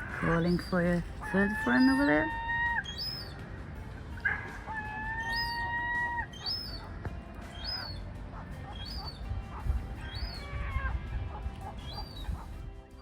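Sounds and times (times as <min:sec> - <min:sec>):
gull whining whistle: 0:01.8 - 0:03.4, 0:04.8 - 0:06.9, 0:07.5 - 0:08.0, 0:08.7 - 0:09.2, 0:10.0 - 0:10.8.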